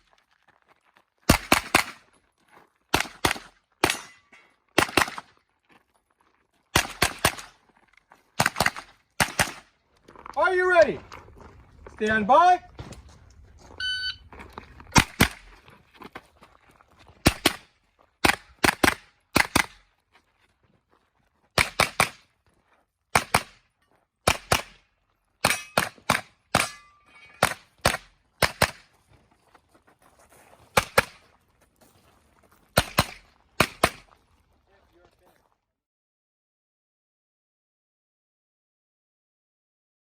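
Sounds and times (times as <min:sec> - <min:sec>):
carbine gunshots: 0:01.3 - 0:02.0, 0:02.9 - 0:05.3, 0:06.7 - 0:07.6, 0:08.4 - 0:09.7, 0:14.9 - 0:15.5, 0:17.3 - 0:19.8, 0:21.6 - 0:22.2, 0:23.2 - 0:23.6, 0:24.3 - 0:24.8, 0:25.4 - 0:28.9, 0:30.8 - 0:31.2, 0:32.8 - 0:34.1.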